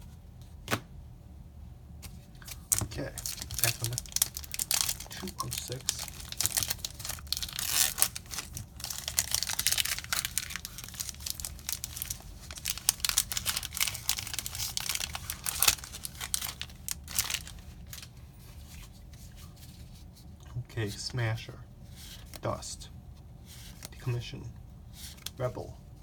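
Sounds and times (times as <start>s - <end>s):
foil wrapper crinkling: 2.4s - 18.2s.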